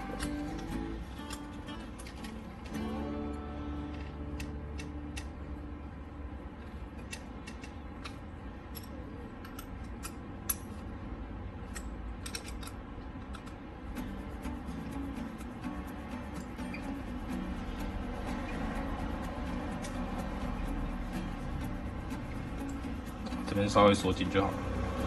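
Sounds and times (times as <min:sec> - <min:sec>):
metallic clicks of hand tools: 0:00.1 - 0:02.7, 0:03.9 - 0:05.4, 0:06.9 - 0:10.9, 0:11.6 - 0:13.6.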